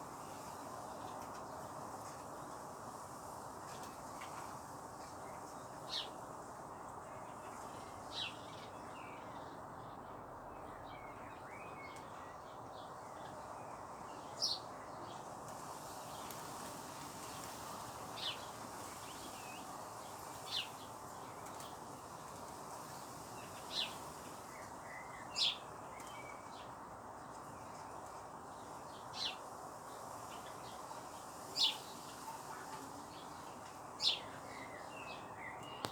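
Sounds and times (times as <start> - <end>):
steady background hiss: 0.0 - 35.9.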